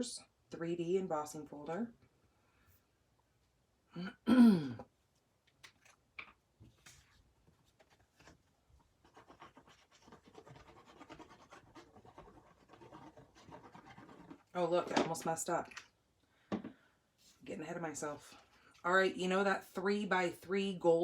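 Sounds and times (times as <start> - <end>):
paper scratching and rustling: 6.7 - 14.5.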